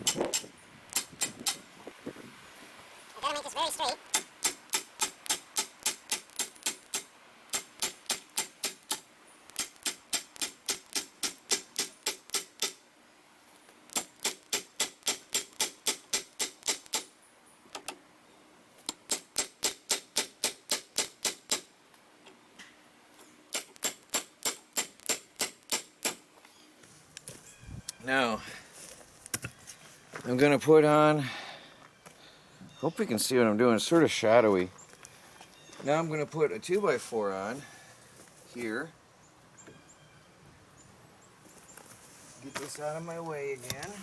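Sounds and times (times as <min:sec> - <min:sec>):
metal post being pounded: 0:09.6 - 0:12.8, 0:14.0 - 0:17.1, 0:19.0 - 0:21.7, 0:23.5 - 0:26.2.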